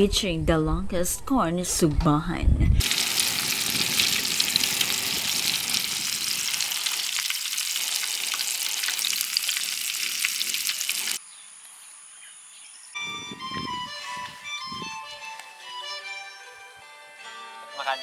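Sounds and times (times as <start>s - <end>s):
food sizzling as it fries: 2.8s - 11.2s.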